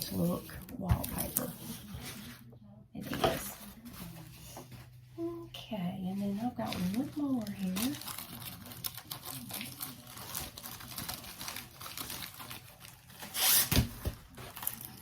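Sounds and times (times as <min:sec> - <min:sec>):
packaging rustling and crinkling: 0:06.2 - 0:15.0
packaging tearing: 0:07.4 - 0:15.0.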